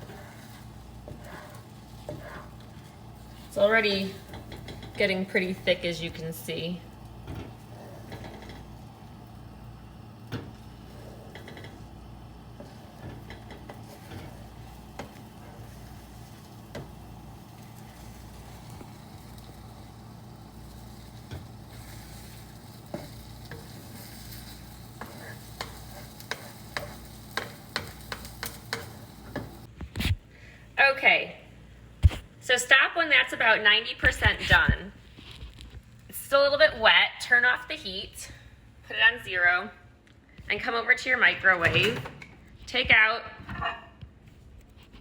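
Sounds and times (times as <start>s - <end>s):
spoon stirring and scraping: 0.0s - 6.2s, 10.4s - 29.7s
eggs sizzling in a pan: 0.0s - 29.7s
steady low hum: 0.0s - 45.0s.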